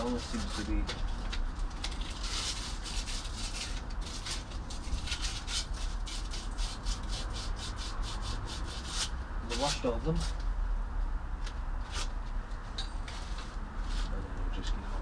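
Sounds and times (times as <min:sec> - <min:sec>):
sandpaper rubbing on metal: 0:00.0 - 0:00.8, 0:02.0 - 0:10.4.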